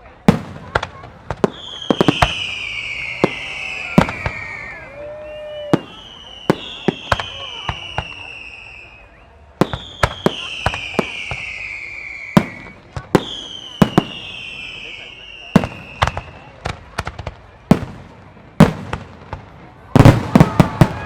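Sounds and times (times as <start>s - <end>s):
long falling firework whistles: 1.5s - 16.5s.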